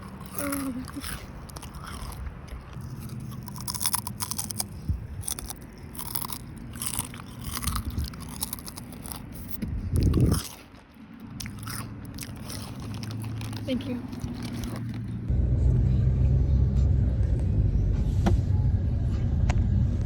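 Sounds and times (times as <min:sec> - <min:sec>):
chips being chewed: 0:00.0 - 0:15.2
loud low rumble: 0:11.2 - 0:20.0.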